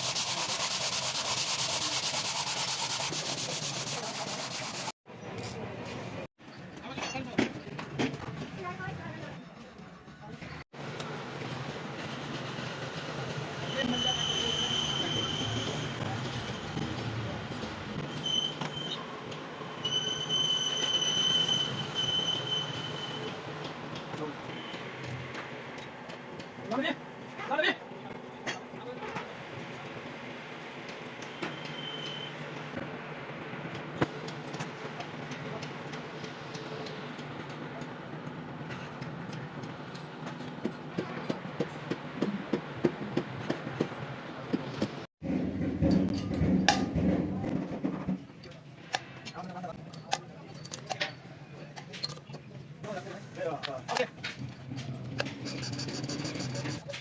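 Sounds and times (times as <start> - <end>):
tool squealing on metal: 13.6 - 17.0, 18.0 - 19.1, 19.8 - 23.5, 31.4 - 32.4, 55.3 - 56.9.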